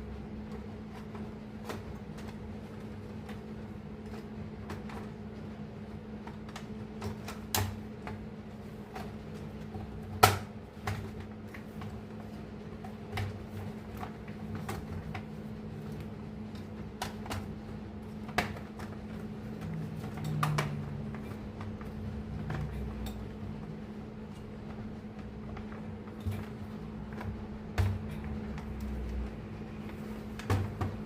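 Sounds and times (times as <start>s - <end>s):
clicks and knocks of printer parts: 6.2s - 8.2s, 8.9s - 12.1s, 12.8s - 23.4s, 29.9s - 31.0s.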